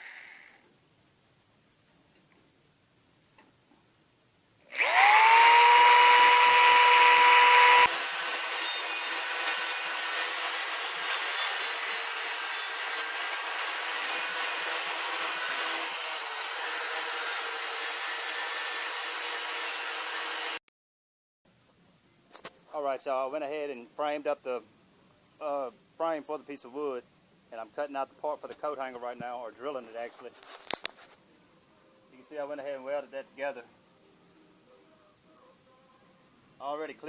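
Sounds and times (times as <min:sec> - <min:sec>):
power tool motor whining: 0:04.7 - 0:11.3.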